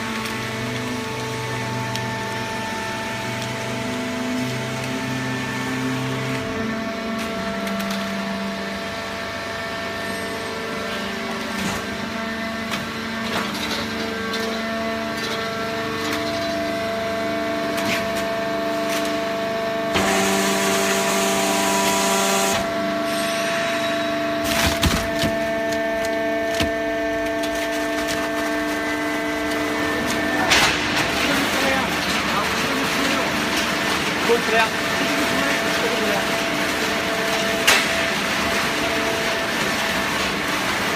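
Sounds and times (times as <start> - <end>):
baling press motor hum: 11.0 - 34.2
cardboard crackling and cracking: 24.4 - 33.7.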